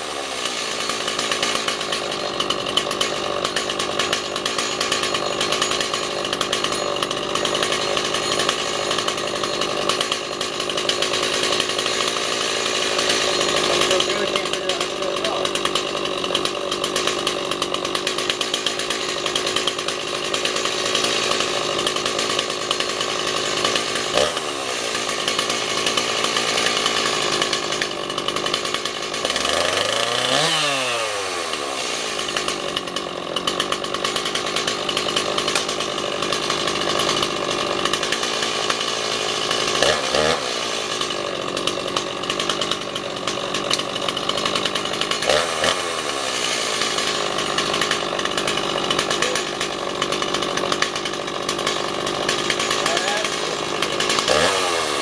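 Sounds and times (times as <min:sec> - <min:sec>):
chainsaw engine revving: 0:00.0 - 0:55.0.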